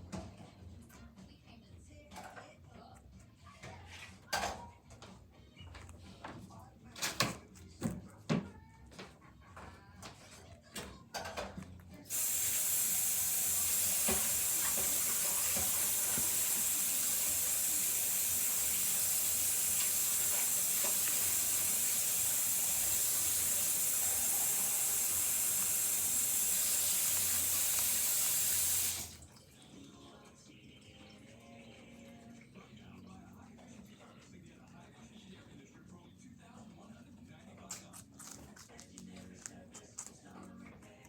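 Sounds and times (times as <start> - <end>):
water running from a tap: 12.1 - 29.6.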